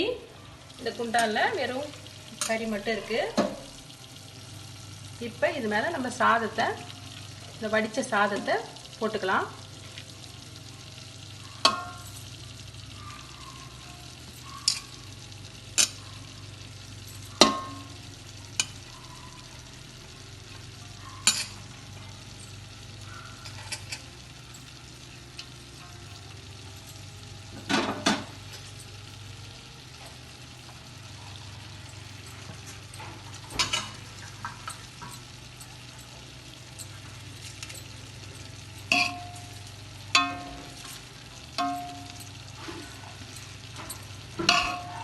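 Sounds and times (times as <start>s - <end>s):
metal spoon clanking on pot: 11.6s - 12.3s, 14.5s - 15.0s, 17.1s - 18.0s, 21.1s - 21.7s, 32.2s - 36.2s, 38.8s - 45.0s.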